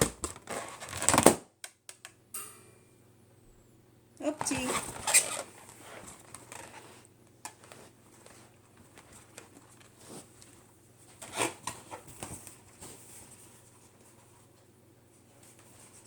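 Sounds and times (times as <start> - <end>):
balloons being handled: 4.4 - 16.0.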